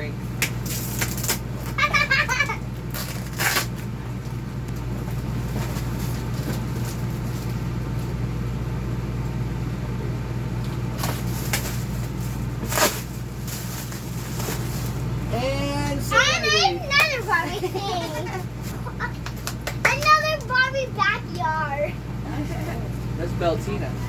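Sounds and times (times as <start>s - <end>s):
packaging rustling and crackling: 11.0s - 15.1s.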